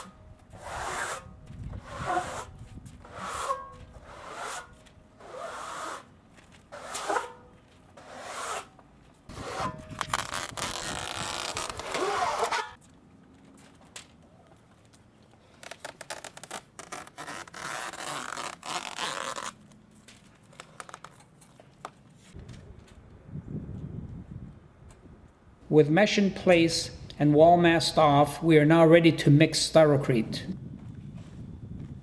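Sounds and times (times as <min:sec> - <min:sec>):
adhesive tape ripping off roll: 0:09.3 - 0:12.8, 0:15.5 - 0:19.7.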